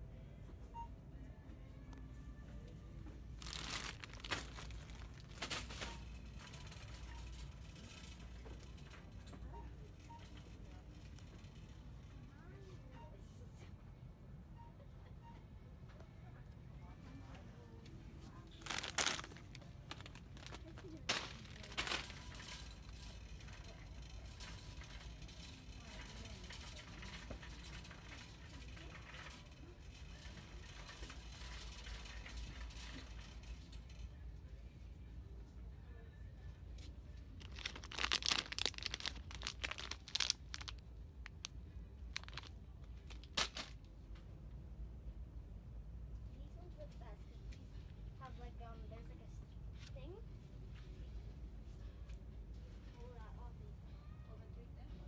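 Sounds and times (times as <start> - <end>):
low hum of a shop: 0.0 - 55.0
plastic packaging crinkling: 3.4 - 6.5, 18.5 - 22.8, 37.4 - 40.8, 42.1 - 43.8.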